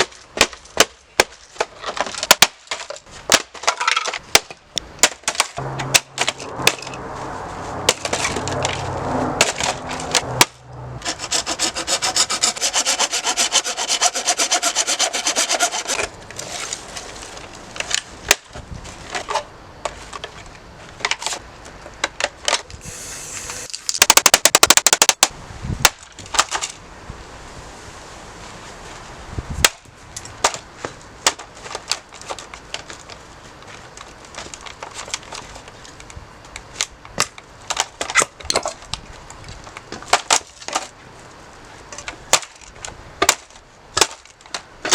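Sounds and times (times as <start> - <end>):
sharp knocks and cracks: 0.0 - 7.0, 23.9 - 26.8, 42.0 - 44.9
fast scraping: 5.6 - 17.2.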